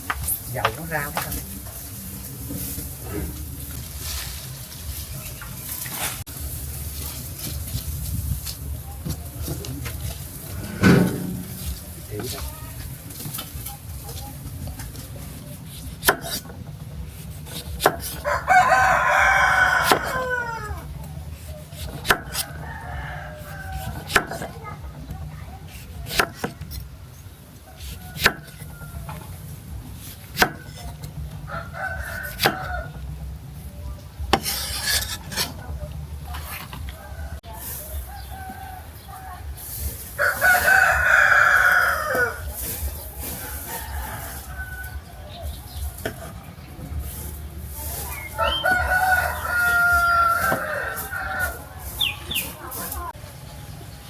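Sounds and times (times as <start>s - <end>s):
sharp knocks: 10.5s - 11.8s
rooster crowing: 18.2s - 20.8s, 31.5s - 32.9s, 40.2s - 42.4s, 48.2s - 52.1s.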